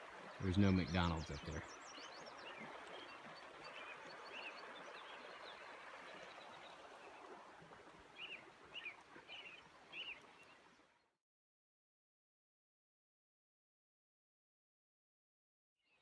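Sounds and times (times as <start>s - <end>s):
river flowing: 0.0s - 10.9s.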